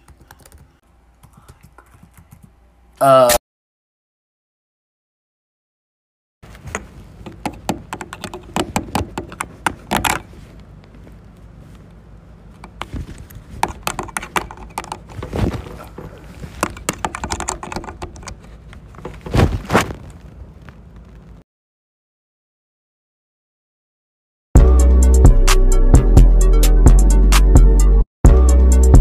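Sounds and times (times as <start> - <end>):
steady low hum: 6.4 - 21.4
irregular clicking and tapping: 6.7 - 11.4, 12.5 - 15.3, 16.6 - 19.2.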